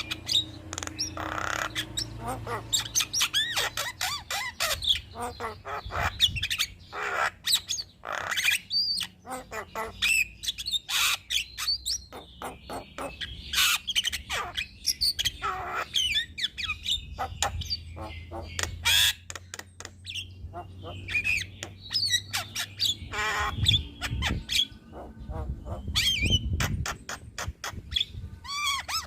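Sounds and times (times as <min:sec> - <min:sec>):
myna squawking and whistling: 0:20.1 - 0:29.0.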